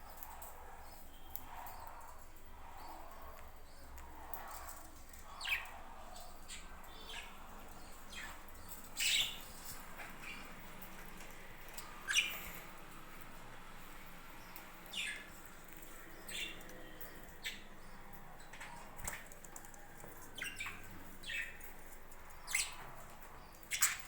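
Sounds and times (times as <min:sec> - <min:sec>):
budgerigars chirping: 0:06.4 - 0:11.0, 0:11.8 - 0:12.9, 0:14.4 - 0:19.2, 0:20.4 - 0:24.0.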